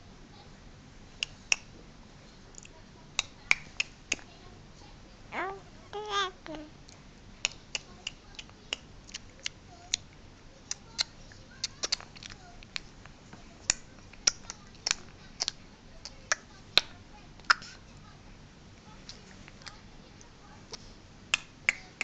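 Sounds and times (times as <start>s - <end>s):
baby cooing: 5.3s - 6.7s
baby mouth clicks: 7.4s - 10.0s, 10.7s - 12.9s, 13.7s - 17.8s.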